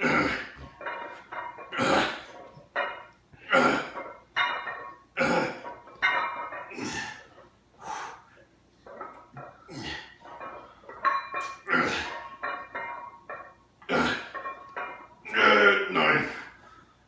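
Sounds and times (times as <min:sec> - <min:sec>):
person breathing hard: 0:06.8 - 0:08.4.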